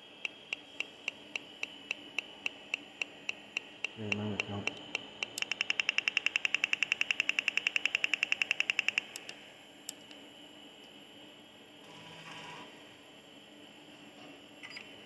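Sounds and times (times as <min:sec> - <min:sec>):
computer speaker clicking: 0:02.2 - 0:09.3.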